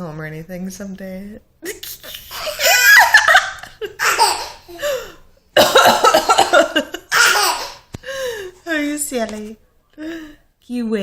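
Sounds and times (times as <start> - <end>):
baby laughing: 1.7 - 7.9.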